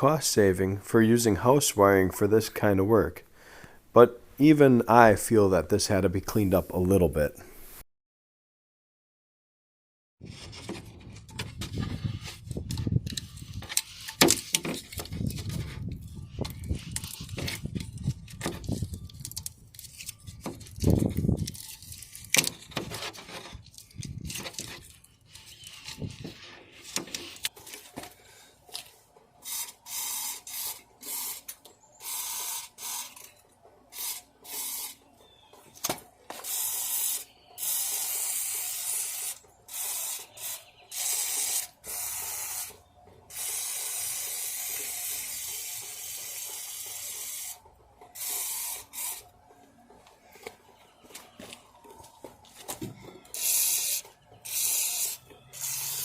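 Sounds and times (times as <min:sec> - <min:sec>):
hissing spray bursts: 0:36.4 - 0:42.7, 0:43.3 - 0:47.5.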